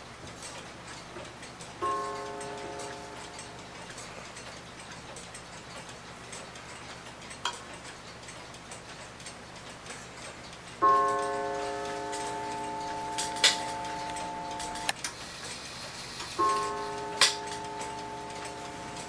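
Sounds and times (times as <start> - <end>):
clock ticking softly: 0.0 - 15.2, 16.2 - 19.0
clock gong ringing: 1.8 - 3.8, 10.8 - 15.0, 16.4 - 19.0.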